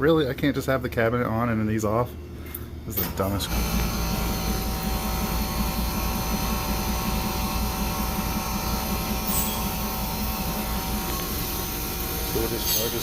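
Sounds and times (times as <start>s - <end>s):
ice cream machine humming: 3.0s - 13.0s.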